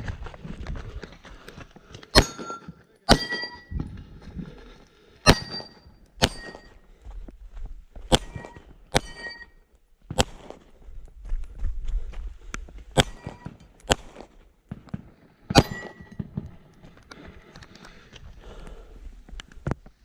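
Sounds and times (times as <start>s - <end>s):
metallic ring: 2.1s - 3.8s, 5.3s - 6.8s, 8.1s - 9.6s, 15.5s - 16.2s
rifle shots: 3.1s - 3.6s, 5.3s - 6.7s, 8.1s - 9.4s, 10.2s - 10.6s, 13.0s - 14.2s, 15.5s - 16.2s.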